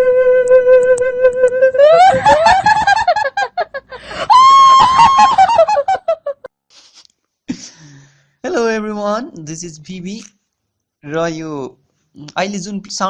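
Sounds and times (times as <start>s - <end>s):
shrieking cackling voice: 1.6s - 6.5s.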